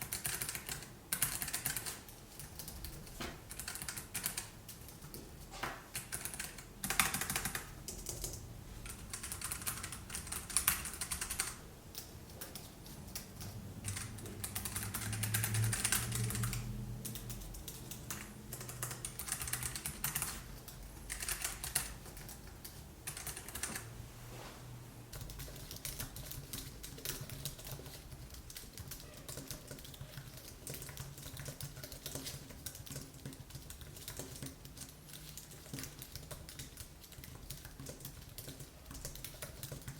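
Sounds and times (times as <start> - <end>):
typing on keyboard: 0.0 - 23.9, 25.1 - 39.9.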